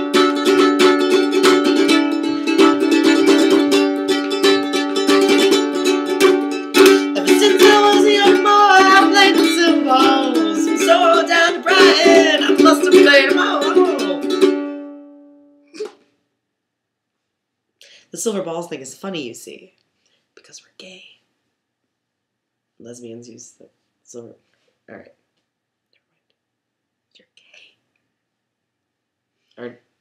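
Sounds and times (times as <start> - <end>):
ukulele strumming: 0.0 - 16.0
woman singing: 6.9 - 14.5.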